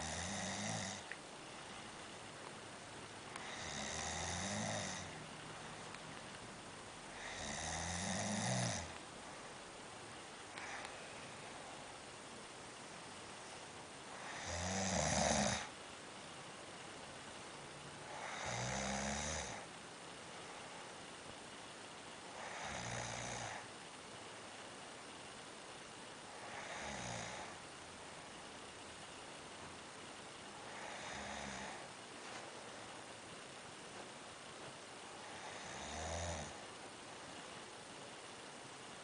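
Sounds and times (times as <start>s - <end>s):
person snoring heavily: 0.0s - 1.1s, 3.4s - 5.2s, 7.1s - 9.0s, 10.6s - 10.9s, 14.1s - 15.7s, 18.1s - 19.7s, 22.3s - 23.7s, 26.3s - 27.6s, 30.6s - 31.9s, 35.2s - 36.6s.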